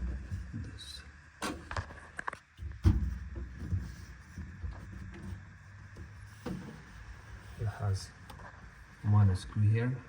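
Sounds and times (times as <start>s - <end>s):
heavy thump: 2.8s - 4.0s.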